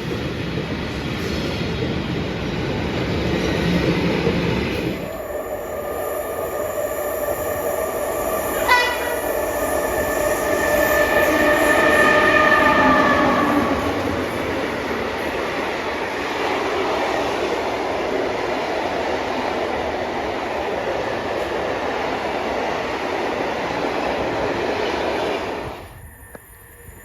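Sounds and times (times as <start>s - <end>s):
train rumbling: 0.0s - 27.0s
train horn blast: 8.5s - 14.5s.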